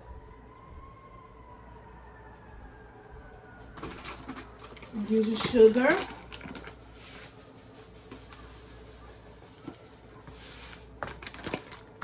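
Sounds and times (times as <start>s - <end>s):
sugar pouring into bowl: 6.7s - 10.9s.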